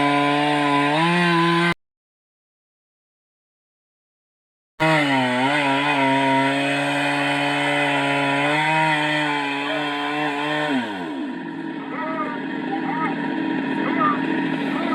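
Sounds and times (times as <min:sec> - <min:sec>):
chainsaw cutting wood: 0:00.0 - 0:01.8, 0:04.8 - 0:14.9.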